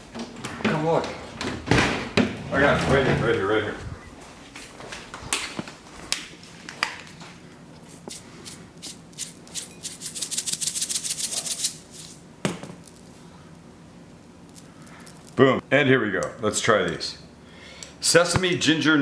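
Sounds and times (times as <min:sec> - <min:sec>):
seeds shaken from container: 0:07.9 - 0:12.2.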